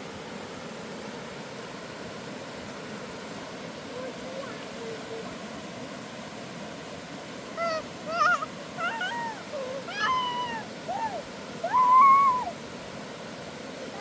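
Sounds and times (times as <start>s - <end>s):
steady background hiss: 0.0s - 14.0s
cat meowing: 7.6s - 10.6s.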